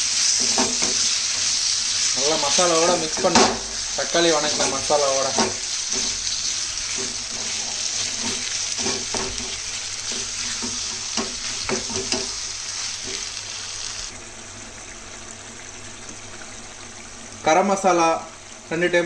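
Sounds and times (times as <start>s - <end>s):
chicken sizzling in oil: 0.0s - 19.0s
spoon scraping a pan: 4.5s - 13.3s.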